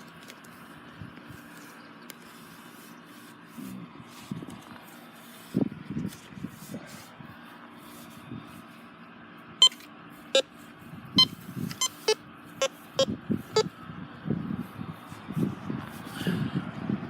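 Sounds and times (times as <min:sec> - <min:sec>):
metal detector beeps: 0:09.6 - 0:09.8, 0:11.2 - 0:13.7.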